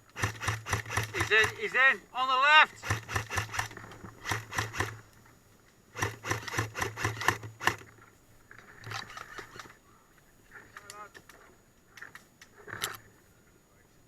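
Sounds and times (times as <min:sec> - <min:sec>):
airsoft gun shots: 0:00.2 - 0:01.7, 0:02.8 - 0:05.0.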